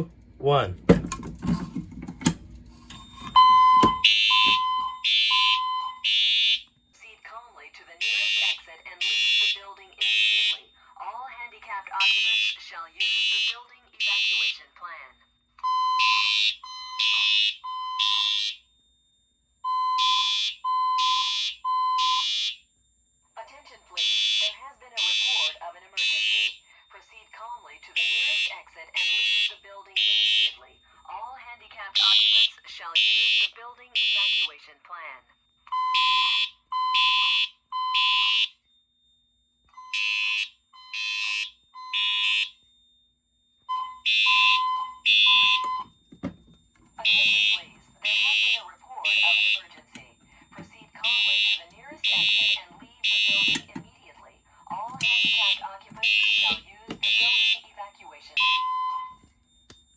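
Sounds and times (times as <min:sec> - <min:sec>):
buzzy fire alarm horn blasts: 0:02.9 - 0:11.0, 0:11.9 - 0:31.1, 0:31.8 - 0:59.9.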